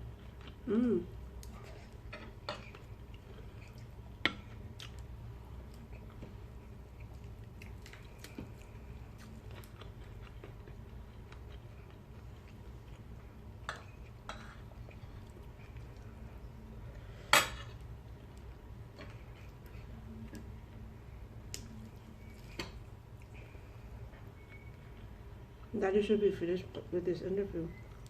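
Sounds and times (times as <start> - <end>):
steady low hum: 0.0 - 28.0
quiet chewing: 1.3 - 16.3.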